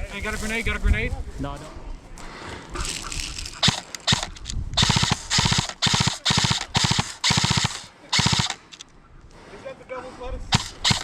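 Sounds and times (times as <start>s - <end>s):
airsoft gun firing: 3.6s - 8.8s, 10.5s - 11.0s.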